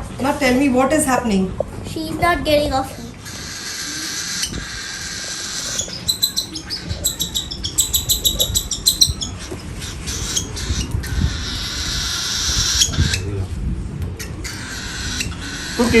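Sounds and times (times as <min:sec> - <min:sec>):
cockatiel chick begging calls: 0:03.2 - 0:13.2, 0:14.2 - 0:16.0.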